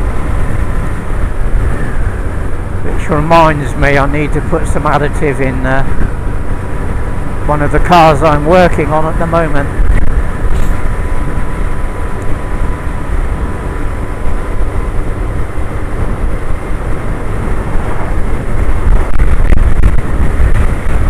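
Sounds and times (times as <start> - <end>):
wind and road noise: 0.0 - 21.0
motorcycle engine running: 8.8 - 21.0.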